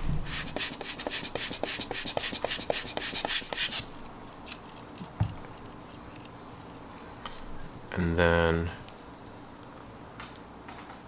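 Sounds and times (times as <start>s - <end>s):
hand air blower puffing: 0.0s - 6.3s.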